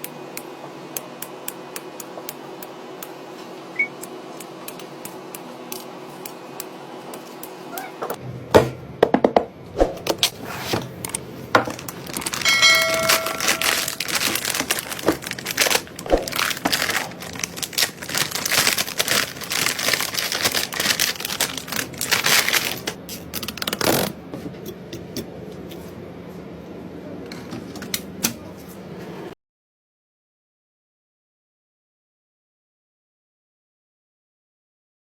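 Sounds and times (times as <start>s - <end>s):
plastic and metal parts handled: 10.0s - 24.2s
short ringing tone: 12.4s - 14.0s.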